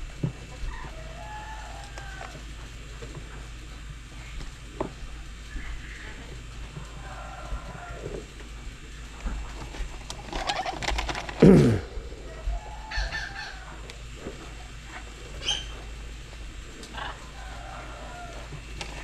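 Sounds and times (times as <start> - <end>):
chickens clucking: 0.2 - 3.8, 5.5 - 16.0, 16.8 - 19.0
wing flaps: 9.4 - 12.0.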